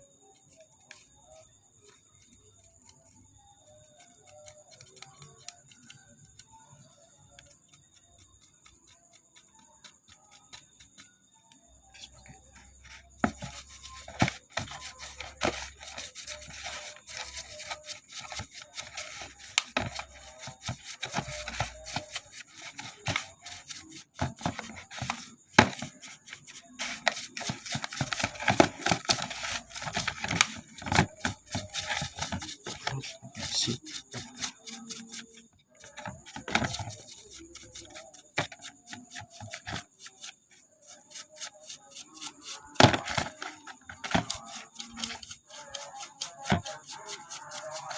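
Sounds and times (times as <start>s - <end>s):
scrubbing and scraping on metal: 12.0s - 47.9s.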